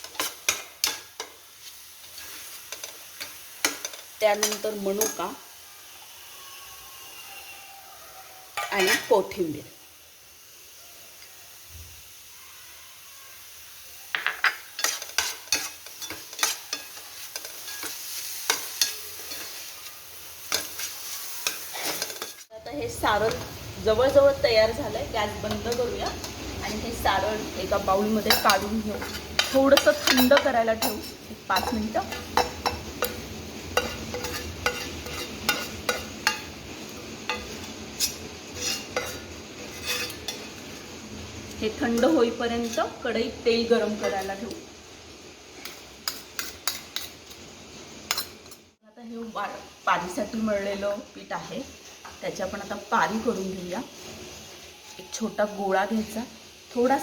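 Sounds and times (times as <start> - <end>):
spatula scraping a pan: 0.0 - 5.3, 8.5 - 9.3, 14.6 - 22.5, 23.1 - 41.0, 41.8 - 43.1, 45.5 - 48.6
soft sizzle: 0.0 - 57.0.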